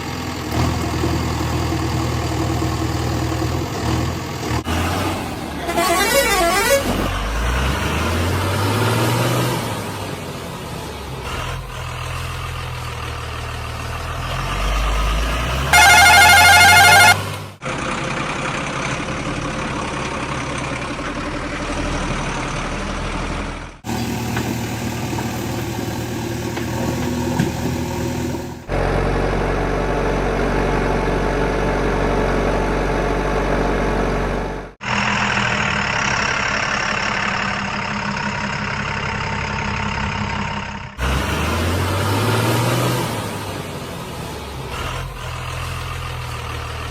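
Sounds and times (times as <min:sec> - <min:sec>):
heavy diesel engines revving: 0:00.0 - 0:46.9
loud warbling horn blast: 0:05.6 - 0:07.1, 0:15.7 - 0:17.2.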